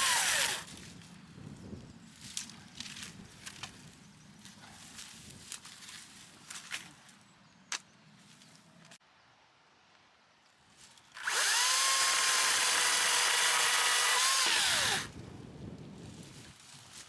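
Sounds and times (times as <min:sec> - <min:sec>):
power tool motor whining: 0:00.0 - 0:00.7, 0:11.2 - 0:15.1.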